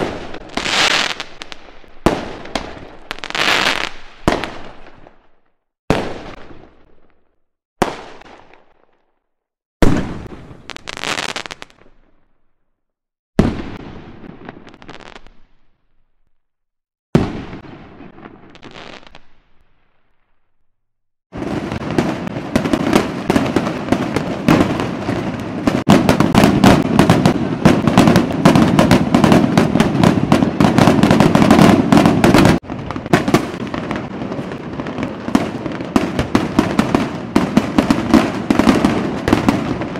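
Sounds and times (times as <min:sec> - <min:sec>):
fireworks banging: 0:00.0 - 0:05.2, 0:09.8 - 0:11.9, 0:21.4 - 0:39.9
fireworks crackling and fizzing: 0:00.0 - 0:09.1, 0:09.8 - 0:12.2, 0:13.4 - 0:15.7, 0:17.2 - 0:20.2, 0:21.4 - 0:39.9.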